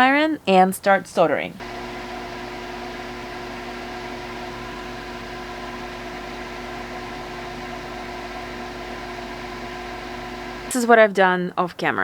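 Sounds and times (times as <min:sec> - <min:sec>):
machine hum with held tones: 0:01.6 - 0:10.8.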